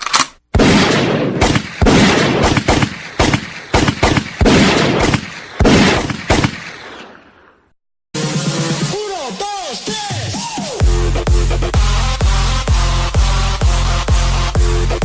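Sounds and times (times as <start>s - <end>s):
gunshots with ringing echo: 0.6s - 7.6s.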